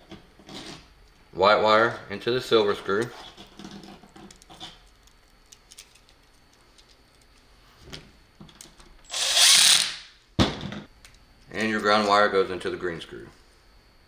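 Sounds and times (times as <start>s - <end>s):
impact drill driving screw: 9.1s - 10.1s.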